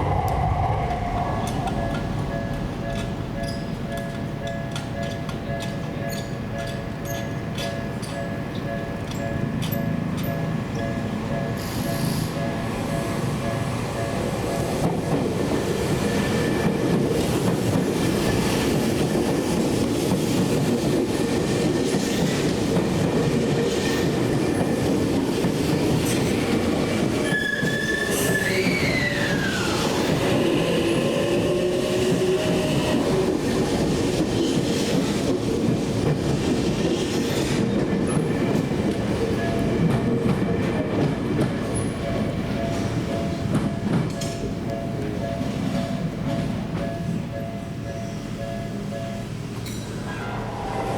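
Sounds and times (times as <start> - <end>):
train wheels rumbling on rails: 0.0 - 50.9
wheel squeal: 27.2 - 30.0.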